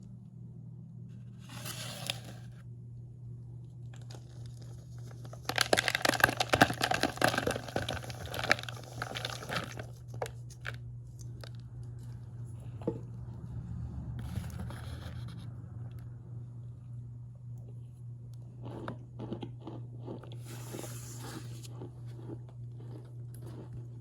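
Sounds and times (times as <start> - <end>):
steady low hum: 0.0 - 24.0
cornstarch crunching and squeaking: 4.0 - 10.8, 18.6 - 23.9.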